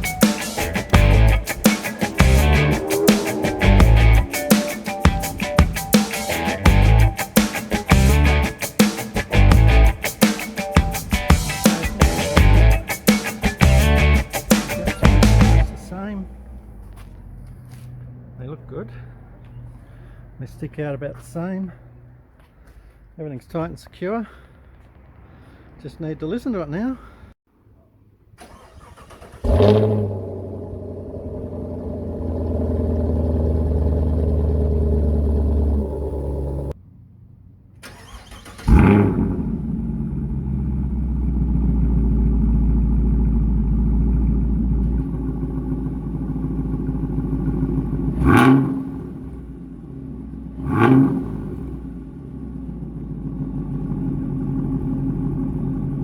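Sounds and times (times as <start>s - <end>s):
engine throttle blips: 0.0s - 10.2s, 10.8s - 22.8s, 28.4s - 56.0s
engine starting with loud flare: 0.0s - 16.8s, 28.4s - 36.8s, 37.8s - 42.1s, 43.9s - 49.5s
car engine idling: 0.0s - 23.1s, 28.4s - 56.0s.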